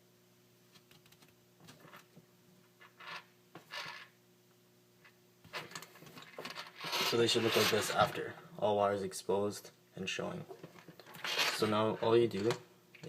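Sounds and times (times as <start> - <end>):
faint steady hum: 0.0 - 13.0
wires clicking and rustling: 0.7 - 2.2, 5.4 - 8.3, 10.5 - 13.0.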